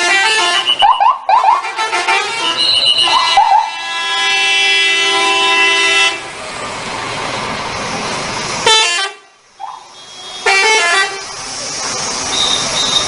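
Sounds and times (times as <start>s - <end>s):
bus air horn chord: 0.0s - 0.8s, 1.6s - 6.2s, 10.0s - 11.2s.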